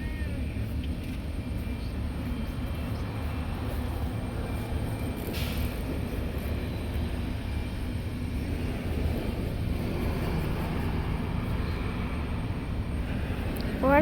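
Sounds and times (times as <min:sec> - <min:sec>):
airplane engines rumbling: 0:00.0 - 0:14.0.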